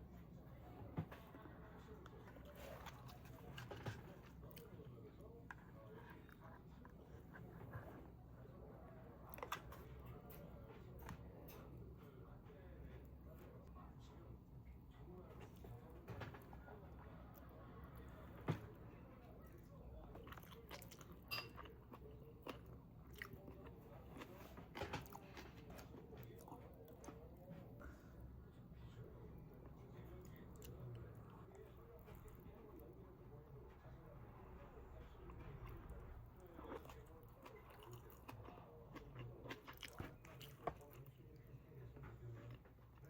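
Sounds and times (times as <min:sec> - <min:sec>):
person chewing food: 0:01.1 - 0:08.2, 0:20.1 - 0:27.3, 0:30.0 - 0:32.4, 0:35.3 - 0:41.5.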